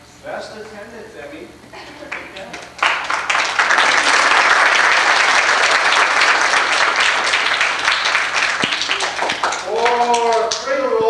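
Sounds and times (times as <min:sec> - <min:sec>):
congregation applauding: 0:02.1 - 0:10.7.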